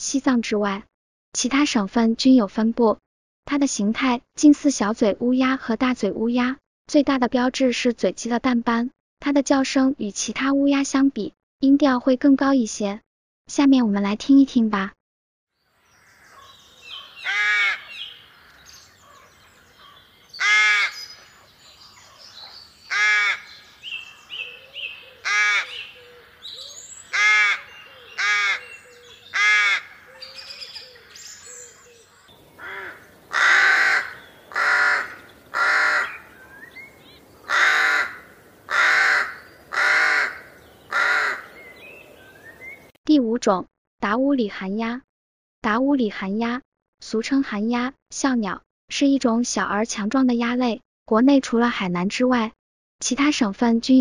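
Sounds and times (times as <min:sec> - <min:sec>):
small birds chirping faintly: 0:15.6 - 0:43.0
rooks cawing: 0:16.0 - 0:21.1, 0:22.8 - 0:31.2, 0:31.8 - 0:36.7, 0:37.3 - 0:42.0.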